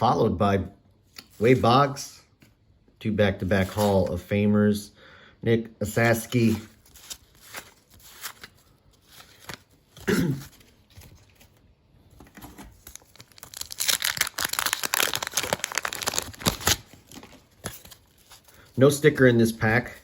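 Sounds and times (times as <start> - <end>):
paper wrapper tearing: 6.3 - 11.6, 12.4 - 20.0.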